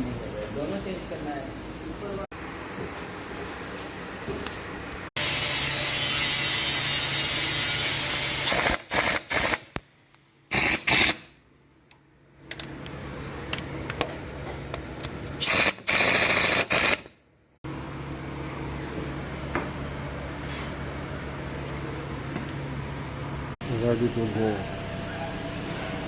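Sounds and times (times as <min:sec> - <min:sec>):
power tool bursts: 0:10.5 - 0:11.3, 0:15.4 - 0:17.1.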